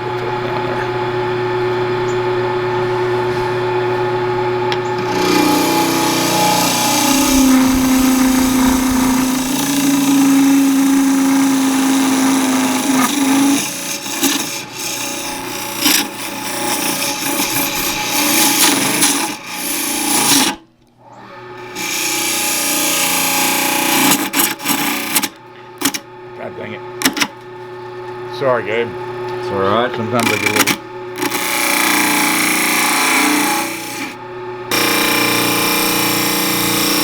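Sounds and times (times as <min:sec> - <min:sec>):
lathe motor humming: 0:00.0 - 0:20.6, 0:21.6 - 0:26.0, 0:27.0 - 0:37.0
gouge scraping spinning wood: 0:02.8 - 0:20.6, 0:21.6 - 0:25.3, 0:29.4 - 0:37.0.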